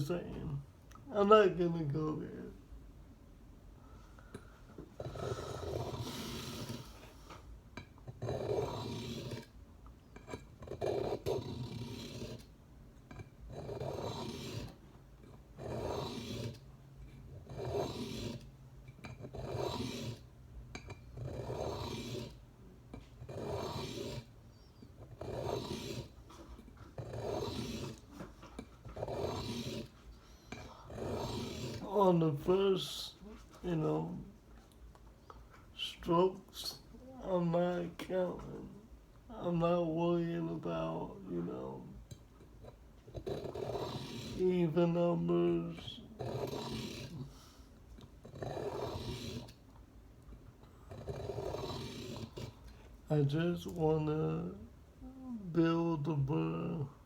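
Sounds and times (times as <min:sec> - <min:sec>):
knife scraping on sharpening stone: 0:13.1 - 0:16.6, 0:17.4 - 0:22.4, 0:23.2 - 0:24.3, 0:25.2 - 0:28.0, 0:28.6 - 0:29.9, 0:43.2 - 0:44.4, 0:48.6 - 0:49.5.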